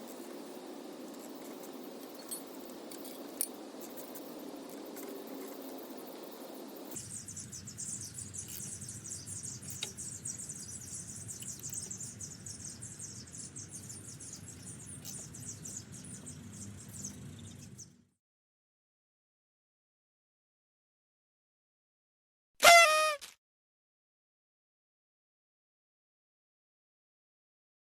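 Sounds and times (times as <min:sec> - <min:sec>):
crickets chirping: 0:00.0 - 0:17.5.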